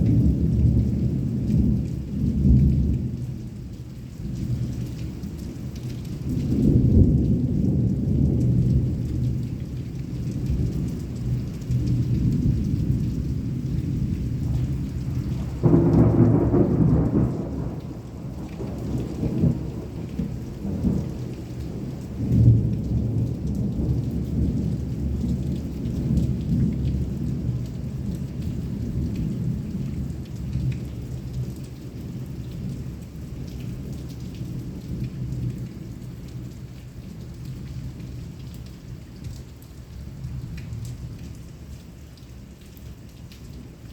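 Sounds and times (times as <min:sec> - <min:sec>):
heavy rain falling: 0:00.0 - 0:43.9
rolling thunder: 0:11.7 - 0:28.0.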